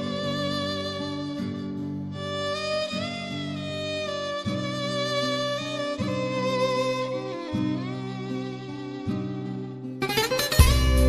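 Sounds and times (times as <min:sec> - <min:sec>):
plucked strings music: 0:00.0 - 0:11.0
held chord: 0:09.6 - 0:11.0
low beat: 0:10.4 - 0:11.0.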